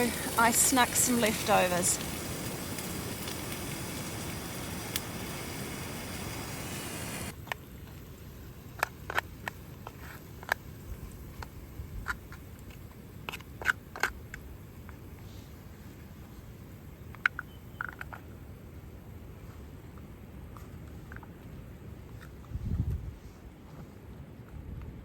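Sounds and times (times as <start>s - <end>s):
small sharp clicks and ticks: 0.0s - 6.3s, 7.3s - 15.0s
rain hissing on tent: 0.0s - 13.2s.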